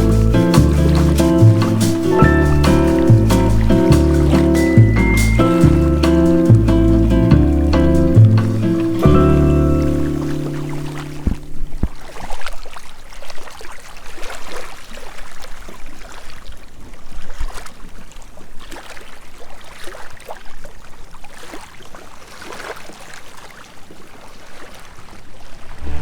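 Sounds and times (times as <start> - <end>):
ocean waves splashing on shore: 0.0 - 16.5.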